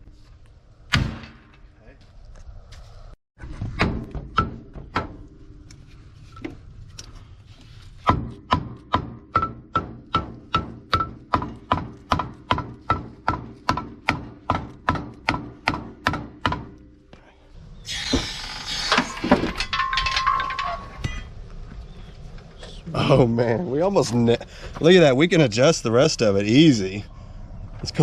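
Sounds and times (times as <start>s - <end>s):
hammer striking steel rail: 8.0s - 16.8s.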